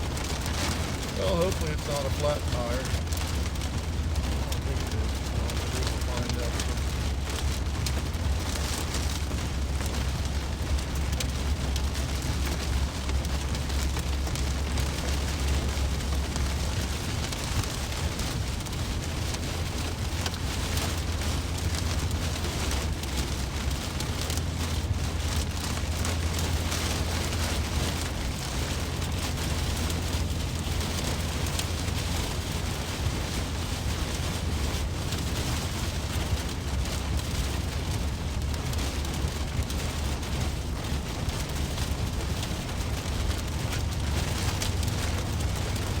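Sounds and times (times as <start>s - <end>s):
car engine drone: 0.0s - 46.0s
tyres hissing on road: 1.0s - 3.0s.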